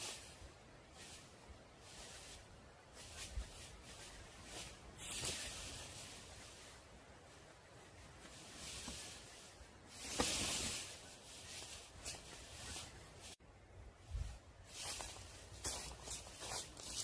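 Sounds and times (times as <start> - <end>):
rustling and scraping: 0.0 - 13.4, 14.0 - 17.0.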